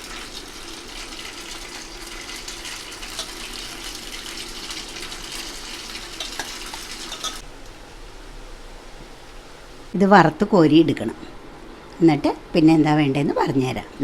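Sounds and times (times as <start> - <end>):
food sizzling in hot oil: 0.0 - 7.4.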